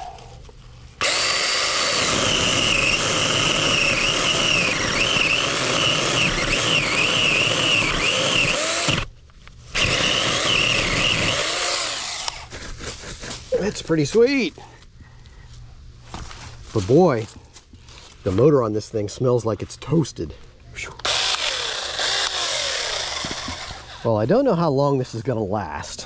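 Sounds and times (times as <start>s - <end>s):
mini chainsaw cutting wood: 1.0s - 9.1s, 9.7s - 12.5s, 21.0s - 24.1s.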